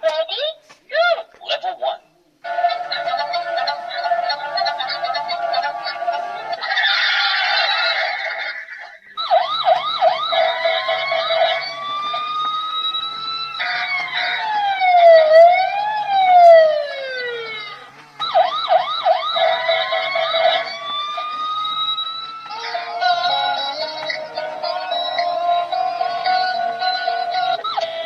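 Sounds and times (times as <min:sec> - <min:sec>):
electronic toy siren: 0:09.2 - 0:28.0.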